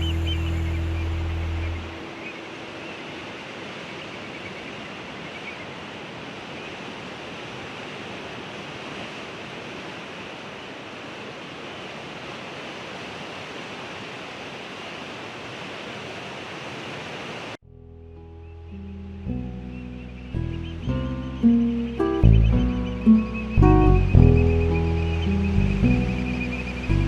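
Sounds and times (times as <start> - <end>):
sea surf waves: 0.0 - 17.6, 20.9 - 27.0.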